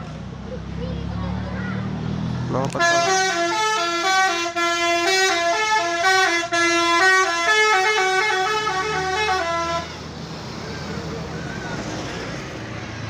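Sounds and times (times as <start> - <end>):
musical bus horn tune: 2.7 - 10.0.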